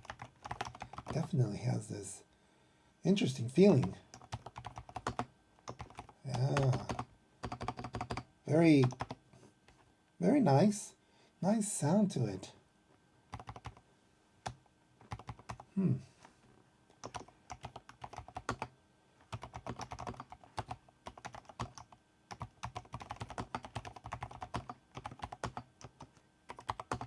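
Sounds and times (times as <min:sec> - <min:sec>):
mechanical keyboard typing: 0:00.0 - 0:01.3, 0:03.6 - 0:09.2, 0:13.3 - 0:13.8, 0:14.4 - 0:15.7, 0:17.0 - 0:27.0.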